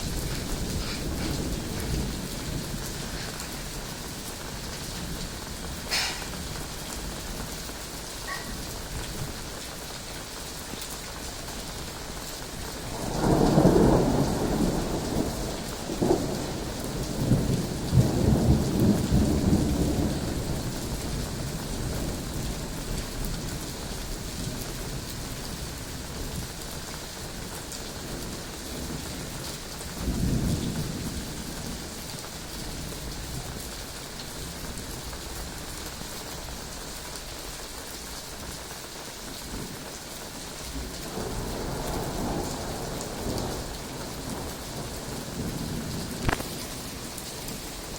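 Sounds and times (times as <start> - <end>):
thunder rumbling and cracking: 0.0 - 9.6, 11.2 - 25.3, 27.4 - 36.6, 39.4 - 47.9
steady rain hiss: 0.0 - 47.9.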